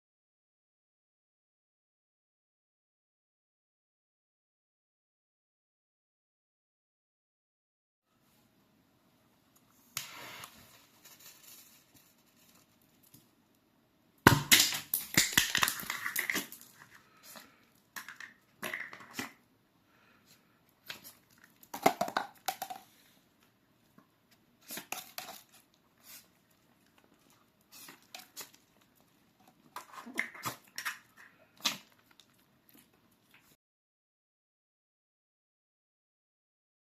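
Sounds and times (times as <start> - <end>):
crackling and rustling: 9.8 - 13.6.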